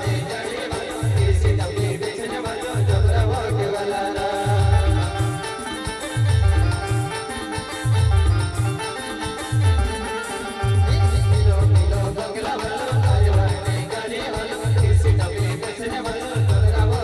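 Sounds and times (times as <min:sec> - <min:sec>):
heavy low drum beats: 0:00.0 - 0:05.5, 0:06.2 - 0:07.2, 0:10.7 - 0:17.0
held melody line: 0:00.0 - 0:17.0.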